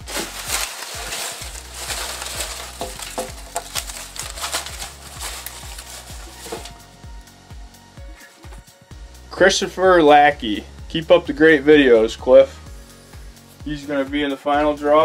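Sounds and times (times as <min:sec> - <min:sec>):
paper slips rustling: 0:00.0 - 0:06.8.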